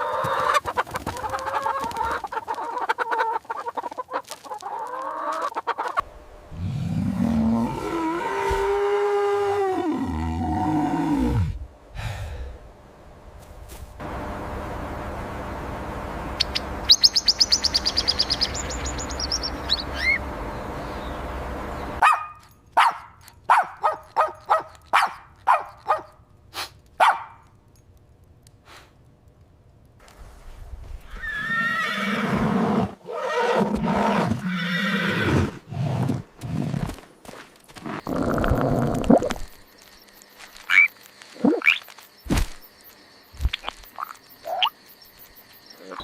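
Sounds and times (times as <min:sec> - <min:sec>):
longer lower animal calls: 0:06.6 - 0:11.6
high animal chirps: 0:16.4 - 0:20.2, 0:38.0 - 0:42.2, 0:43.3 - 0:46.0
background noise: 0:21.8 - 0:46.0.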